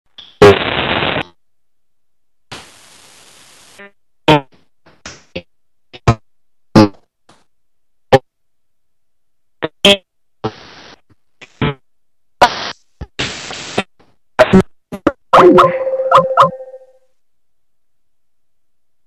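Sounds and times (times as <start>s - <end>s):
connection hiss: 2.5s - 3.8s
glitched voice fragments: 15.3s - 16.9s.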